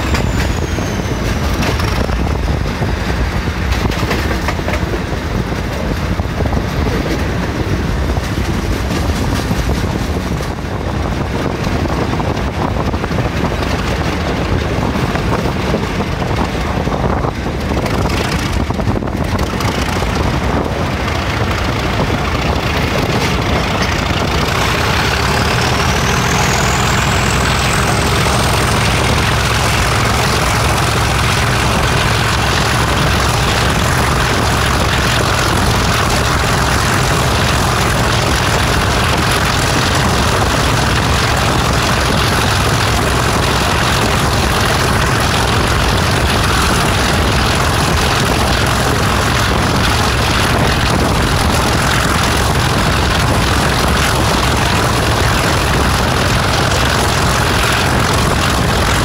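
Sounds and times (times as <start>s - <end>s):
turbocharger whistle: 0.0s - 2.4s
diesel locomotive engine rumbling: 0.0s - 59.0s.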